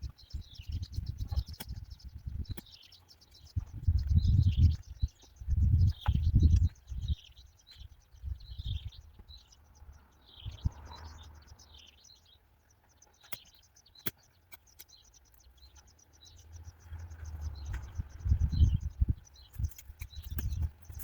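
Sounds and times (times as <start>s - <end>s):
birds chirping and singing: 0.0s - 21.0s
low rumbles: 16.4s - 21.0s.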